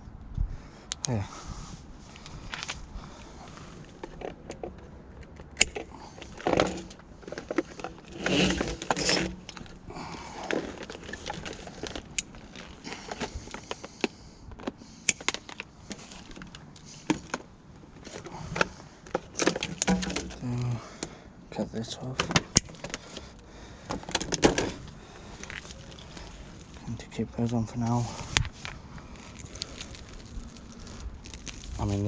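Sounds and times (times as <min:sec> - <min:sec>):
rustling: 0:06.0 - 0:20.6, 0:22.7 - 0:32.0.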